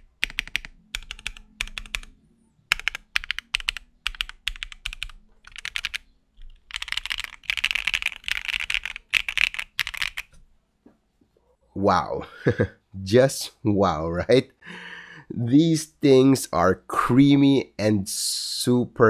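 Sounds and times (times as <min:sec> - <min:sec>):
mechanical keyboard typing: 0:00.0 - 0:10.3.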